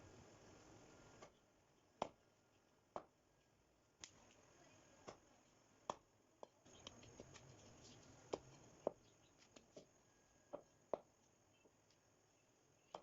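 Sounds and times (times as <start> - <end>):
soft rustle: 6.8 - 9.8.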